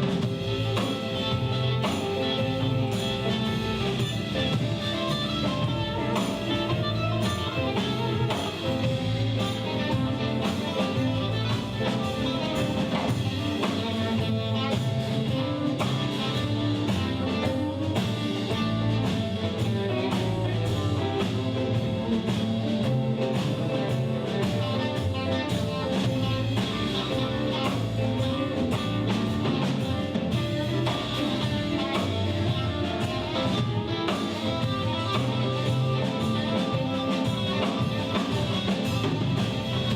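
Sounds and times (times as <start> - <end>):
blues band playing live: 0.0 - 39.9.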